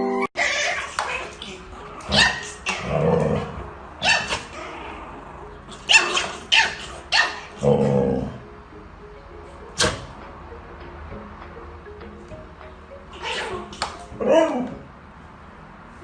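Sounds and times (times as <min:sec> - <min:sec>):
dog barking: 0:02.1 - 0:02.9, 0:04.0 - 0:04.5, 0:05.9 - 0:07.5.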